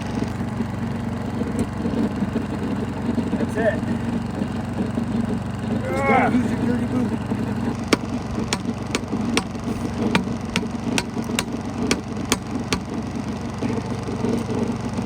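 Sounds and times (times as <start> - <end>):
engine idling: 0.0 - 15.0.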